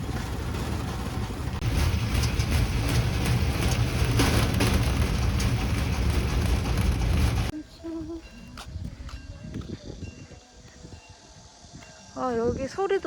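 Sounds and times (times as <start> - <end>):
steel wheels rolling on track: 0.0 - 7.5.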